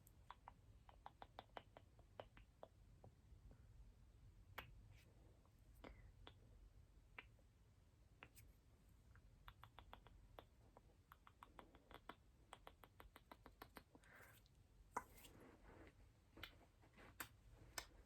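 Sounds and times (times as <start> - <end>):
wet tongue and lip clicks: 0.0 - 3.1, 5.8 - 6.4, 9.1 - 15.1.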